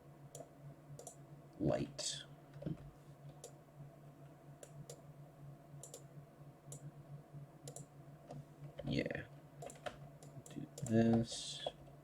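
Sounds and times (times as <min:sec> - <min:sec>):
steady low hum: 0:00.0 - 0:12.0
computer mouse clicks: 0:00.3 - 0:01.2, 0:04.6 - 0:05.0, 0:05.8 - 0:06.1, 0:07.6 - 0:08.4, 0:09.6 - 0:11.8.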